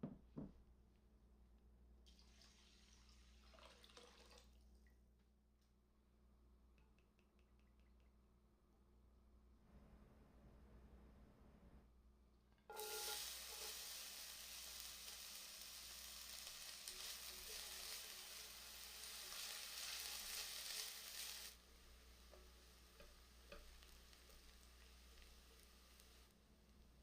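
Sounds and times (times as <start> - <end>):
stirring clicks: 6.7 - 8.2
food sizzling in hot oil: 12.7 - 27.0.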